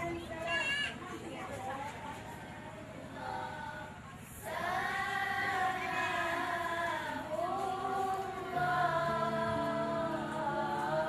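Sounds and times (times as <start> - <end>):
children singing in unison: 3.0 - 11.0.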